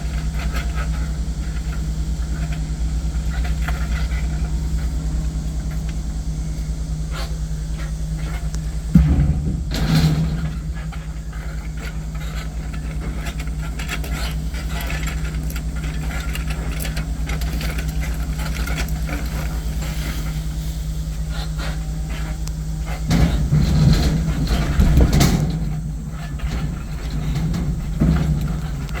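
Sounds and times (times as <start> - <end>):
logging machine engine running: 0.0 - 29.0
machine knocks handling timber: 8.2 - 14.3, 23.0 - 29.0.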